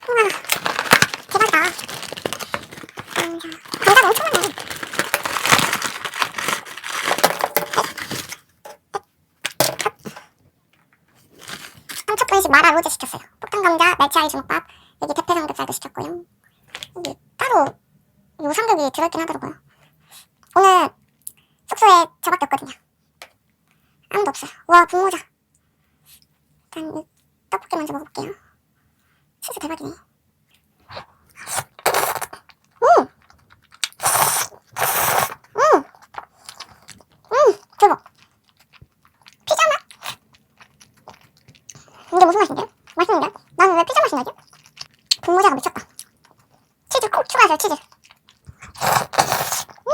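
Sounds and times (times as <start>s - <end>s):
plastic packaging crinkling: 0.0s - 8.8s, 11.2s - 12.3s
mouth sounds eating: 30.5s - 49.9s.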